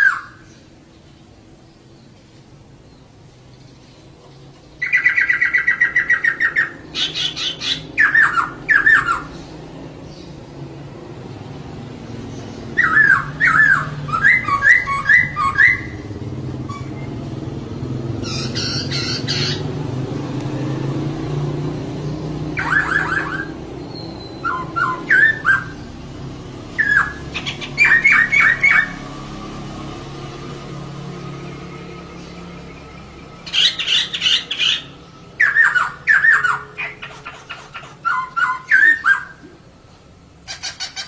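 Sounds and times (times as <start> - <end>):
bird calling with sliding notes: 0.0 - 0.9, 3.6 - 41.0
harsh bird chattering: 4.8 - 9.5, 12.7 - 17.0, 18.2 - 19.8, 22.6 - 25.9, 26.8 - 29.0, 33.5 - 39.4, 40.4 - 41.0.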